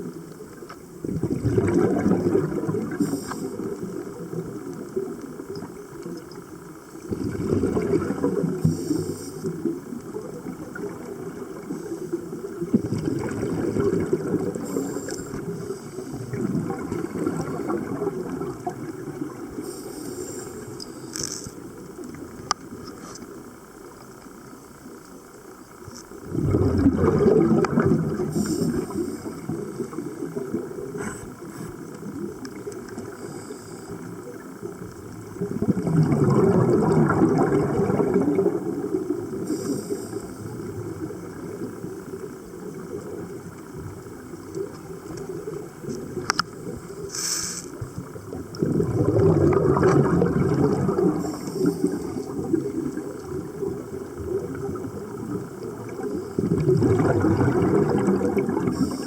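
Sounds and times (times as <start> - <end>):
underwater exhaled bubbles rumbling: 0.0 - 59.0
faint regulator hisses: 2.8 - 7.1, 8.5 - 12.7, 14.4 - 16.4, 18.5 - 26.3, 28.1 - 35.4, 38.6 - 48.3, 51.1 - 54.3, 58.7 - 59.0.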